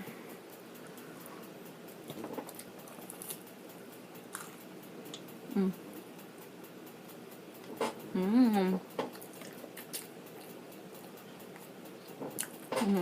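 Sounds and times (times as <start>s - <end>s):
person chewing: 2.0s - 3.5s, 4.2s - 6.0s, 7.6s - 13.0s.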